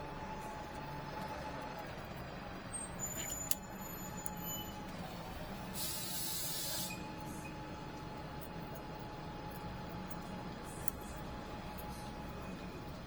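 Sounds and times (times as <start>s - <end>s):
short spray hiss: 5.8s - 6.9s.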